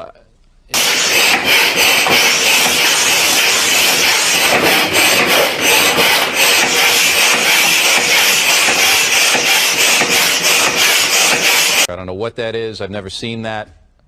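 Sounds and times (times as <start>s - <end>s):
harsh rasping noise: 0.7s - 11.9s.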